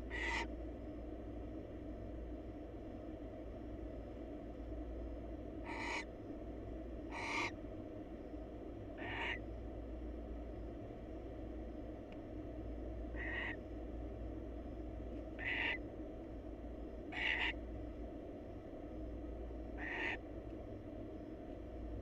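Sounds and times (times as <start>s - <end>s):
barn owl hissing calls: 0.0s - 0.6s, 5.6s - 6.1s, 7.1s - 7.6s, 8.9s - 9.5s, 13.1s - 13.6s, 15.3s - 15.8s, 17.1s - 17.6s, 19.7s - 20.2s
steady low hum: 0.0s - 22.0s.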